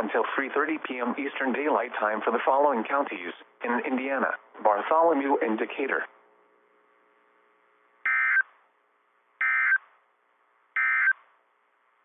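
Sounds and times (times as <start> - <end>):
digital data tone bursts: 8.1 - 8.4, 9.4 - 9.8, 10.8 - 11.2.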